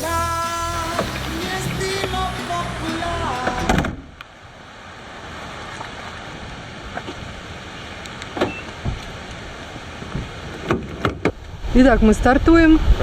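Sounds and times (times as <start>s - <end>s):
music: 0.0s - 3.9s.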